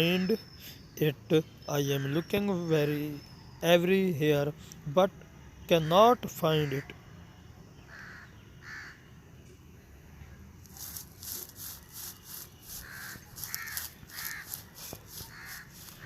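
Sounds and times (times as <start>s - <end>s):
crows cawing: 7.9s - 9.0s, 12.7s - 16.0s
rhythmic rustling: 10.6s - 16.0s.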